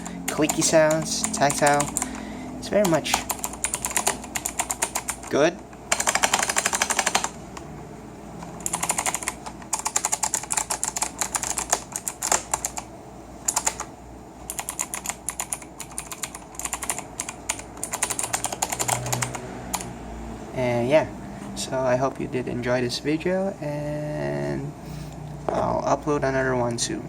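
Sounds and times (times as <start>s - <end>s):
clicky keyboard typing: 0.0s - 2.2s, 2.8s - 5.3s, 5.9s - 7.7s, 8.4s - 12.9s, 13.5s - 13.9s, 14.5s - 19.9s.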